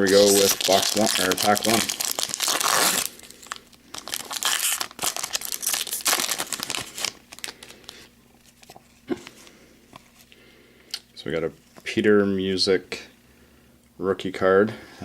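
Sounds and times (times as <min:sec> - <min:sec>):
cards being handled: 0:00.0 - 0:03.0
foil wrapper tearing and crinkling: 0:00.0 - 0:08.1.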